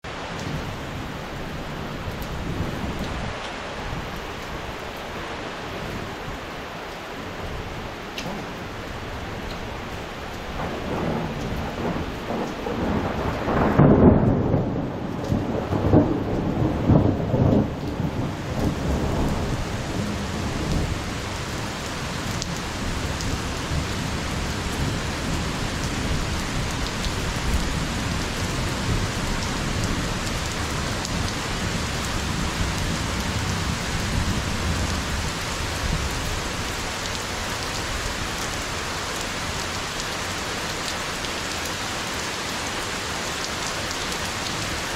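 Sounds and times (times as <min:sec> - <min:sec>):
heavy rain: 0:00.0 - 0:44.9
thunder rolling: 0:10.6 - 0:21.1.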